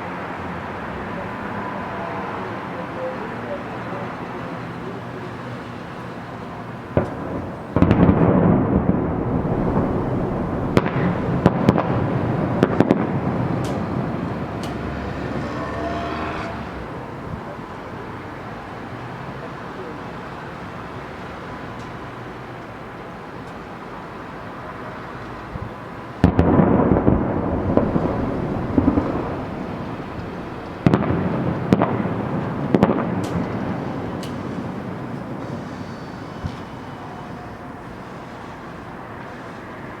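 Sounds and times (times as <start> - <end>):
sharp firework cracks: 6.9 - 15.0, 26.2 - 37.0
firework bang: 6.9 - 15.7, 26.2 - 37.1
firework boom with rumble: 7.0 - 14.9, 26.2 - 35.8.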